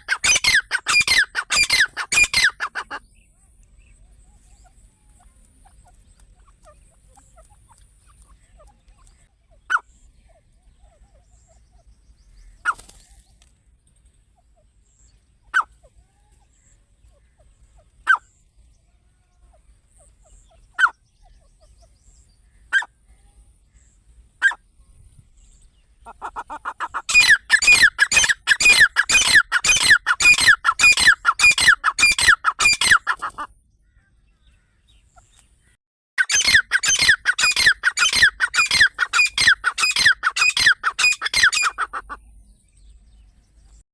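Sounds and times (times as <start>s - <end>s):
partridge calls: 0.0s - 13.2s, 14.3s - 18.6s, 19.4s - 35.4s, 36.2s - 42.4s.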